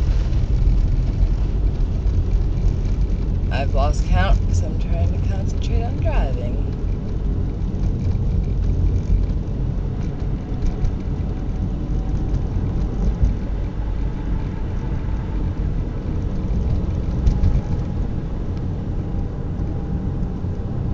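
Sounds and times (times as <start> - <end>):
car engine and tyre rumble: 0.0 - 20.9.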